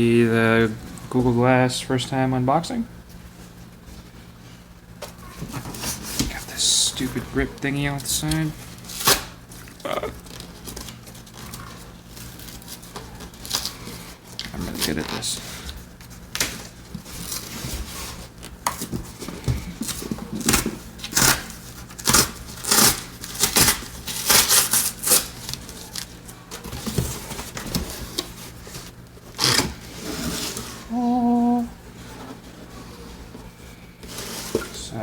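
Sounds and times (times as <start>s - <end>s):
packaging scraping and tearing: 8.0s - 18.9s, 19.8s - 30.9s
person humming: 9.8s - 10.2s, 30.9s - 31.8s.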